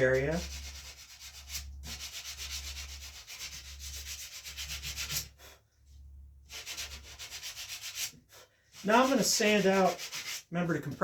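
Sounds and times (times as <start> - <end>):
sandpaper scratching on wood: 0.0 - 5.4, 6.5 - 10.5.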